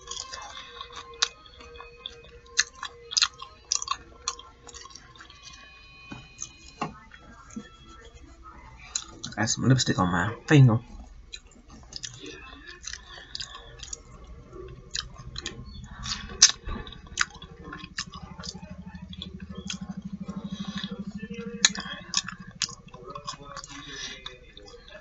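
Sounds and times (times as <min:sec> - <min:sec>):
person chewing crunchy food: 0:00.0 - 0:05.8, 0:08.9 - 0:09.4, 0:11.0 - 0:25.0
low steady hum: 0:00.0 - 0:25.0.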